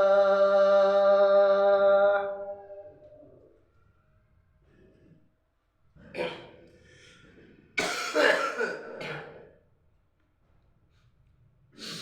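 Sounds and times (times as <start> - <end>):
man clearing his throat: 6.1 - 6.6, 7.8 - 9.5
man coughing: 7.8 - 9.5.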